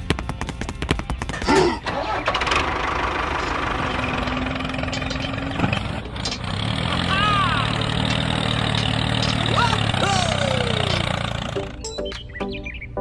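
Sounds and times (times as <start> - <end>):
small engine starting and running: 1.9 - 11.8.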